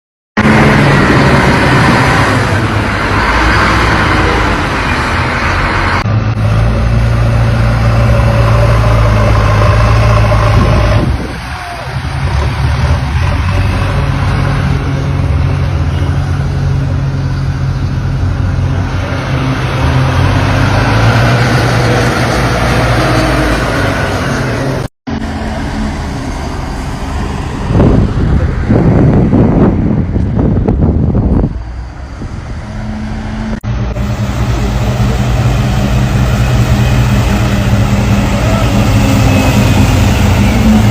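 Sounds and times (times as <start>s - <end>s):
road rushing noise: 0.4s - 40.9s
vehicle engine running: 27.9s - 40.9s.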